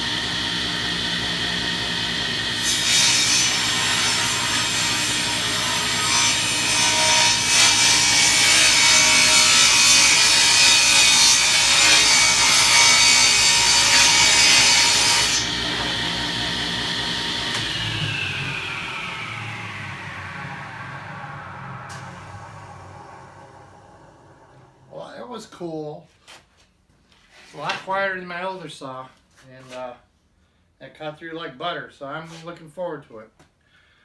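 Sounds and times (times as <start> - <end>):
table saw cutting board: 0.0 - 25.0.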